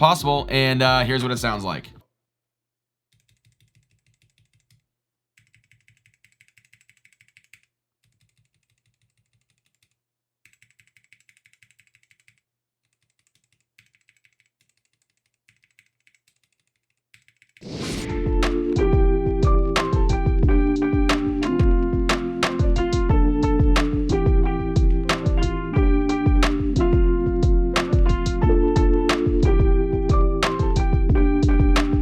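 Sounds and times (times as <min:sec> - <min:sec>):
faint mechanical keyboard typing: 0:03.1 - 0:04.8, 0:05.4 - 0:17.6.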